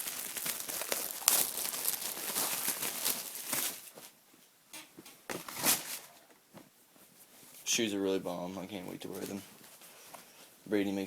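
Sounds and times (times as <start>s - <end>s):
plastic packaging crinkling: 0.0s - 4.1s, 5.0s - 6.4s
handling sounds: 0.0s - 7.5s.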